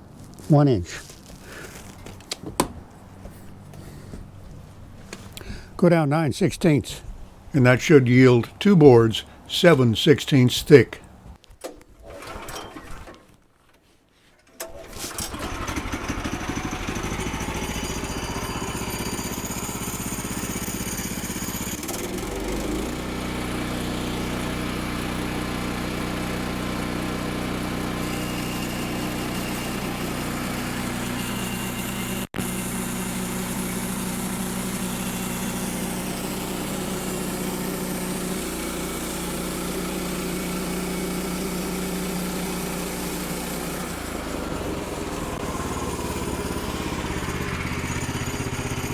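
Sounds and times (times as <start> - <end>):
small gasoline engine running: 14.8 - 48.9
saw blade cutting through log: 16.4 - 25.5, 26.3 - 48.9.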